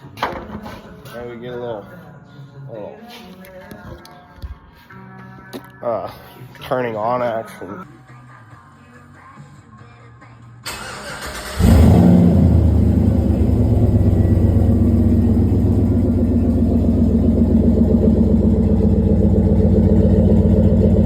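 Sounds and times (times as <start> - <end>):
truck engine starting and idling: 10.6 - 21.0.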